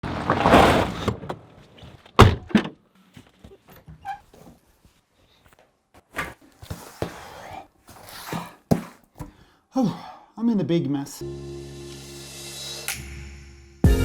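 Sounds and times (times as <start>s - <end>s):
heavy thunks: 2.1s - 2.8s.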